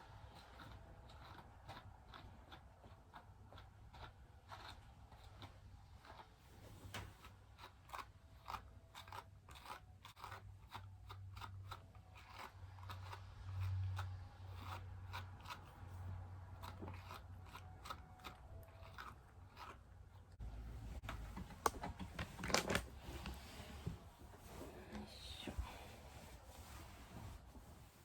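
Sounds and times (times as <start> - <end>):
faint low hum: 0.0 - 28.0
brush strokes through dog fur: 23.3 - 28.0.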